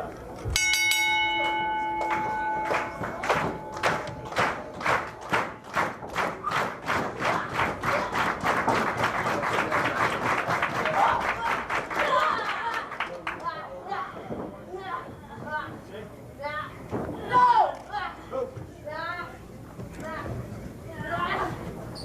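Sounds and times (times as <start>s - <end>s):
ring bell ringing: 0.6s - 4.3s
crowd clapping in rhythm: 1.4s - 13.5s.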